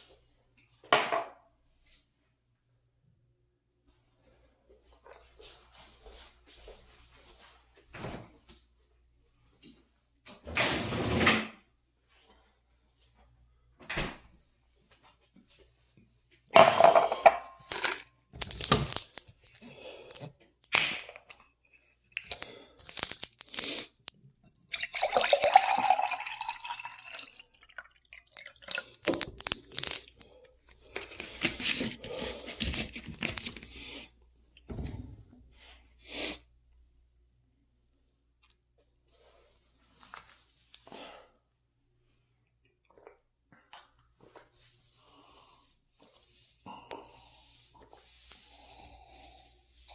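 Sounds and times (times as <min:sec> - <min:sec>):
crinkling: 0:17.6 - 0:20.3, 0:21.2 - 0:24.2, 0:28.3 - 0:33.8
food crunching: 0:17.6 - 0:21.1, 0:21.8 - 0:24.0, 0:28.0 - 0:33.8.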